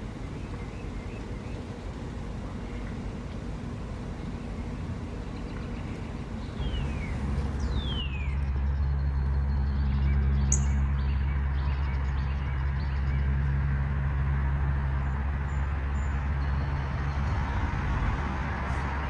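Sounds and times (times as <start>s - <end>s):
low engine hum: 0.0s - 19.0s
downward sliding bird calls: 6.6s - 8.4s.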